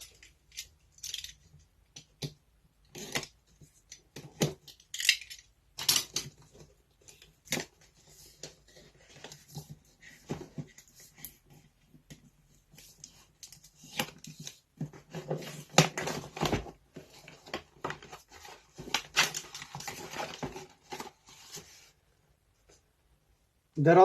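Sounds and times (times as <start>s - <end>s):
packaging rustling and scraping: 12.5s - 22.0s.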